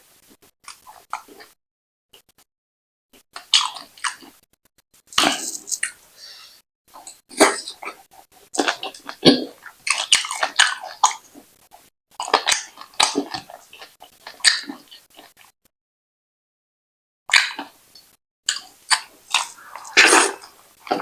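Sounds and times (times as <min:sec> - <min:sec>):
wet sticky chewing sounds: 0:03.4 - 0:04.4, 0:06.9 - 0:15.5, 0:17.3 - 0:21.0.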